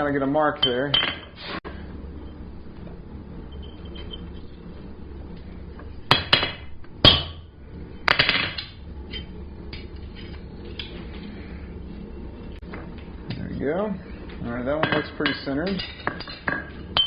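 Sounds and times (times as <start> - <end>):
hammer striking metal punch: 6.1 - 7.4.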